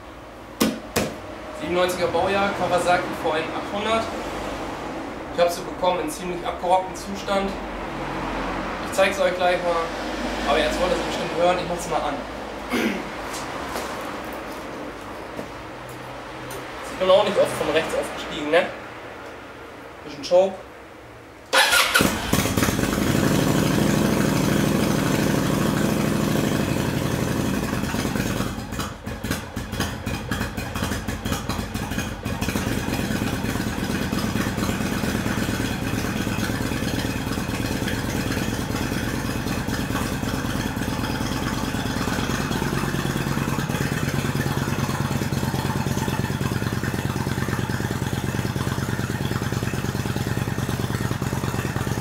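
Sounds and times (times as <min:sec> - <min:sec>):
motorcycle engine idling: 0:21.5 - 0:52.0.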